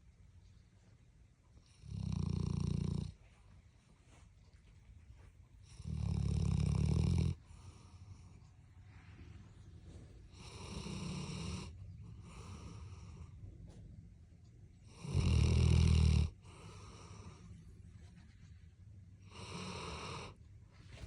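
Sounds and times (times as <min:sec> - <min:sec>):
dog snoring: 0:01.6 - 0:03.2, 0:05.6 - 0:08.4, 0:10.3 - 0:13.4, 0:14.8 - 0:17.5, 0:19.2 - 0:20.4
dog breathing: 0:05.7 - 0:13.8, 0:16.3 - 0:17.6.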